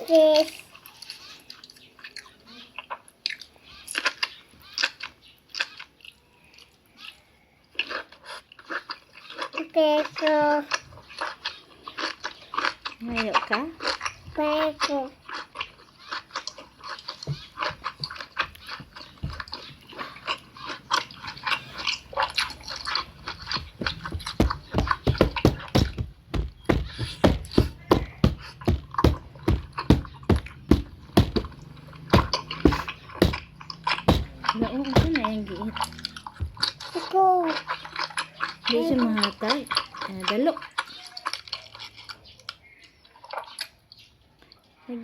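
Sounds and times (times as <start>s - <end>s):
person chewing food: 0.0s - 44.8s
heavier thuds: 23.5s - 35.3s.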